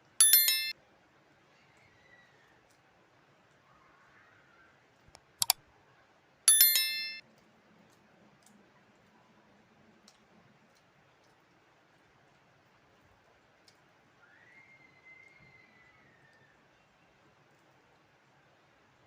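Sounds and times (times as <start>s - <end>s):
tableware clinking: 0.0s - 0.7s, 6.5s - 7.2s.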